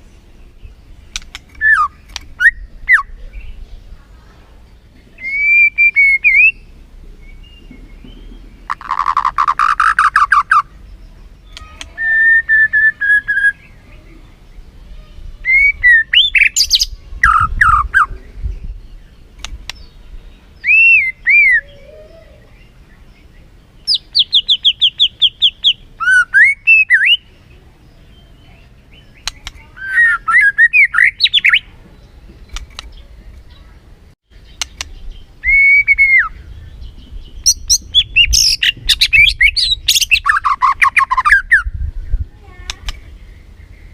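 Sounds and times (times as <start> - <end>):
bird singing whistled phrases: 1.6 - 3.5, 5.2 - 6.7, 11.4 - 13.8, 15.4 - 18.1, 20.6 - 22.5, 23.9 - 27.2, 29.2 - 31.7, 35.0 - 36.6, 37.4 - 42.3.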